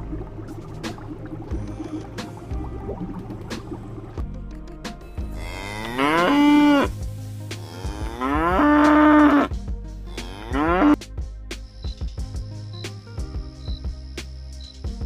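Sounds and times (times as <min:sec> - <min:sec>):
cow mooing: 0:05.4 - 0:06.9, 0:07.6 - 0:09.5, 0:10.2 - 0:11.0.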